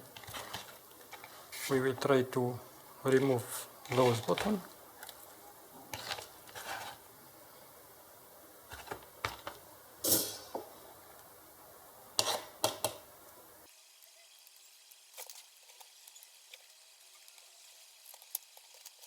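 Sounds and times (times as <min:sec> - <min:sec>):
hissy tool scrape: 0:00.2 - 0:01.9, 0:05.9 - 0:07.0.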